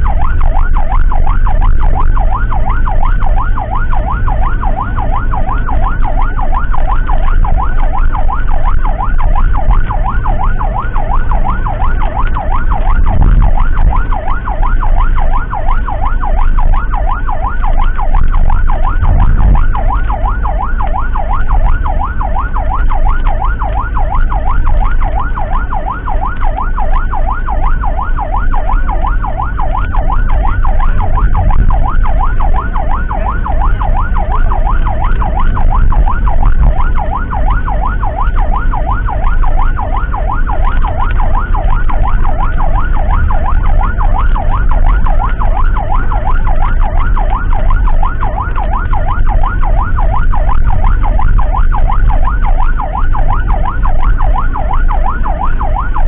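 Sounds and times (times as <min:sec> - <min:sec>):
emergency siren yelping: 0:00.0 - 0:56.0
vehicle engine and road noise: 0:00.0 - 0:56.0.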